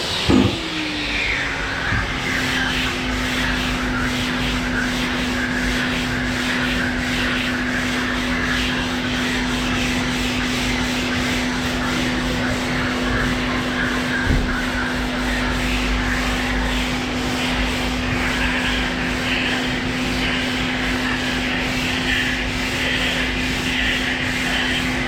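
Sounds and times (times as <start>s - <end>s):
sander motor hum: 0.0s - 3.9s
brief knock: 0.3s - 0.6s
sanding disc rasping on filler: 2.2s - 25.0s.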